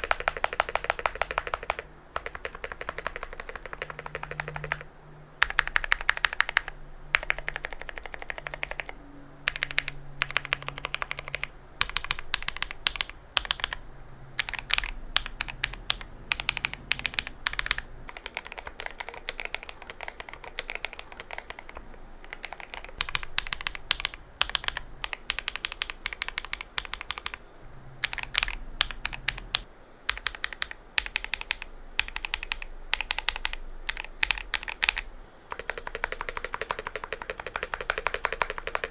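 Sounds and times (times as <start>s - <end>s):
mechanical keyboard typing: 0.0s - 27.4s, 28.0s - 38.9s.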